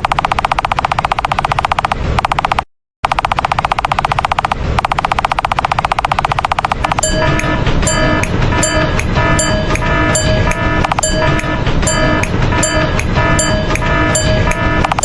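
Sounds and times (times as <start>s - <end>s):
sharp clicks: 0.0s - 15.0s
cartoon crossing bell ringing: 6.9s - 15.0s.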